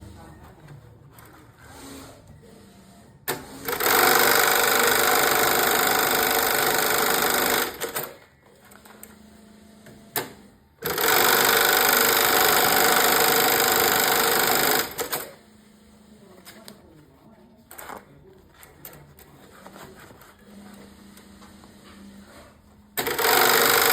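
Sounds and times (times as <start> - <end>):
eyelet machine stitching: 3.3 - 8.2, 10.0 - 15.4, 23.0 - 23.9.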